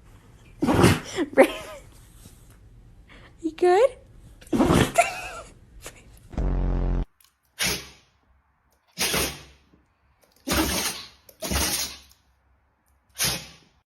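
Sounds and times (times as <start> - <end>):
dog sneezing: 7.6 - 8.0, 10.5 - 12.1, 13.2 - 13.7.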